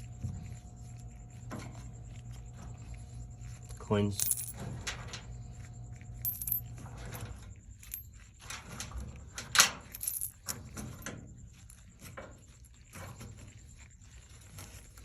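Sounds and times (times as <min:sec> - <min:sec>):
coins clinking and rattling: 0:04.0 - 0:05.2, 0:06.2 - 0:08.2, 0:09.5 - 0:10.6.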